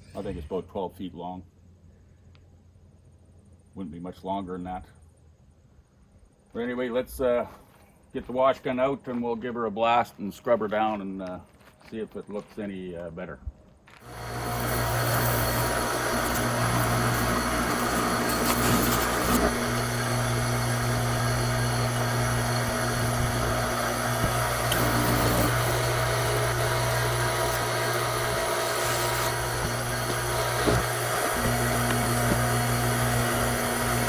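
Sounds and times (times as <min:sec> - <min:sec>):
pressure washer spraying: 0:14.1 - 0:34.0.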